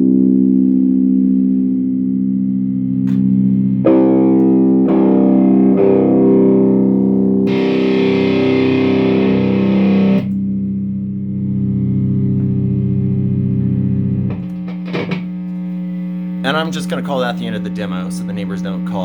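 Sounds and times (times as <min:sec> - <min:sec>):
distorted electric guitar chords: 0:03.0 - 0:16.5.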